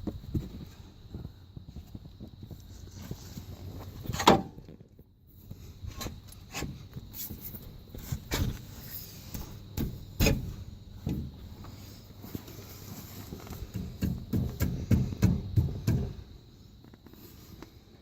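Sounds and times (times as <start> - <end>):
metallic knocks and clunks: 4.1 - 4.6, 9.4 - 11.5.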